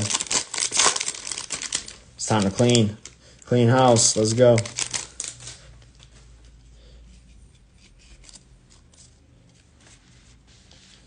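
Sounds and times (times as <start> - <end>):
low electrical hum: 0.0 - 11.0
trading cards being handled: 3.8 - 10.0.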